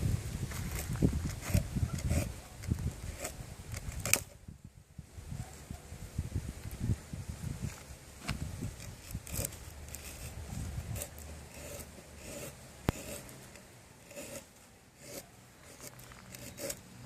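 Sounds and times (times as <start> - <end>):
knife scraping wooden stick: 0.5 - 4.4, 8.6 - 17.0.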